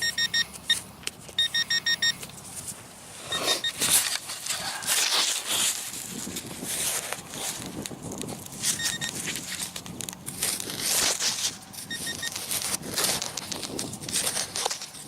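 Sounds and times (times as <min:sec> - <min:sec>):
metal detector high beeps: 0:00.0 - 0:00.8, 0:01.4 - 0:02.2, 0:03.2 - 0:03.9, 0:08.7 - 0:09.2, 0:11.9 - 0:12.4
soil scraping and crunching: 0:02.3 - 0:15.0.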